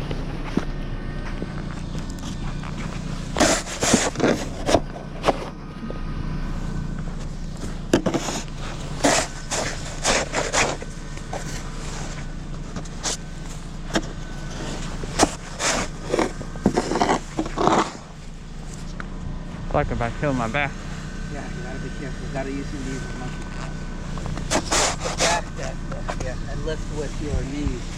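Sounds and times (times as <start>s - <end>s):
engine hum: 0.0s - 27.9s
snow shovel scraping snow: 0.3s - 5.5s, 6.5s - 18.9s, 21.4s - 27.9s.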